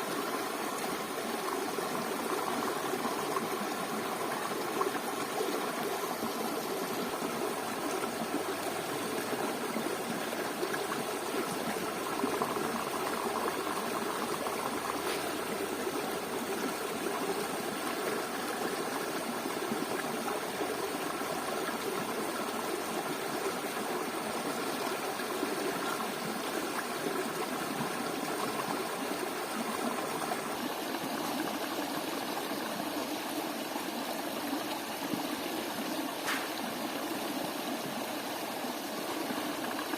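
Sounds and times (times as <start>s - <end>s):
flowing stream rushing: 0.0s - 39.9s.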